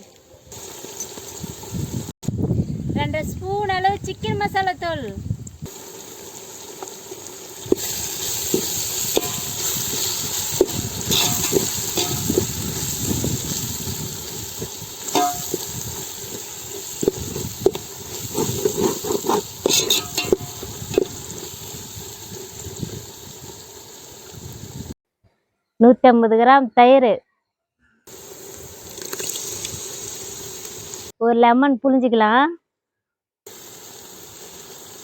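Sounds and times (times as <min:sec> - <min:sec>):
food sizzling: 0:00.0 - 0:02.2, 0:04.2 - 0:25.0, 0:28.1 - 0:31.2, 0:33.5 - 0:35.0
ladle scraping pot: 0:07.7 - 0:12.9, 0:15.0 - 0:15.8, 0:17.0 - 0:21.2.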